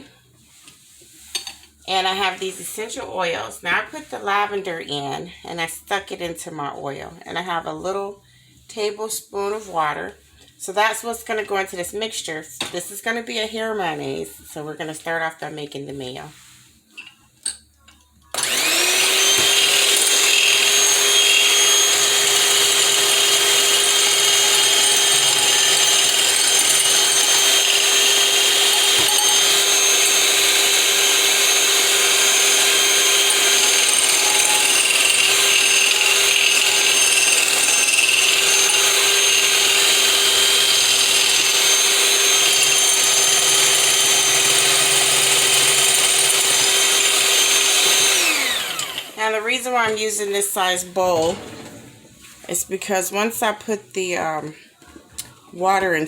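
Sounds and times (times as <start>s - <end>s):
electric blender whirring: 18.3s - 49.4s.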